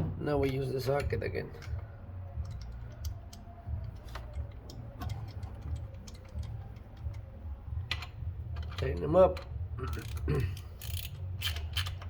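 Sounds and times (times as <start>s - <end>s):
ratchet clicking: 2.4s - 12.0s.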